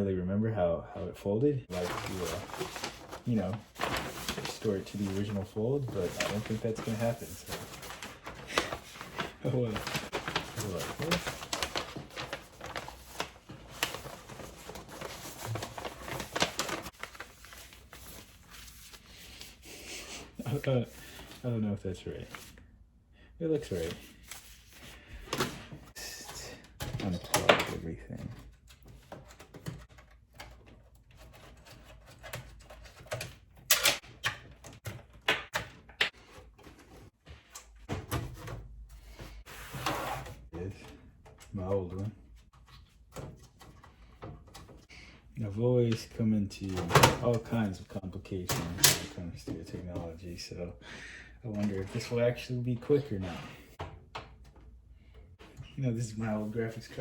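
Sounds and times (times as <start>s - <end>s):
packaging rustling and scraping: 1.7s - 19.6s.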